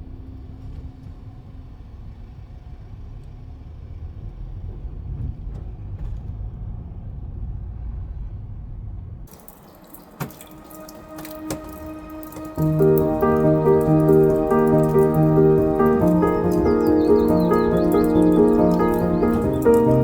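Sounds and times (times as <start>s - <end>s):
rain falling steadily: 9.3s - 20.0s
water drips: 9.3s - 20.0s.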